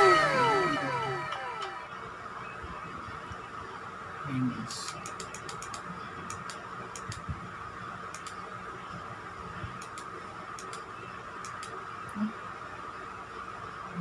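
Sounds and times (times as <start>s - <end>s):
light ticks and clicks: 4.8s - 7.3s, 8.1s - 8.4s, 9.7s - 12.2s.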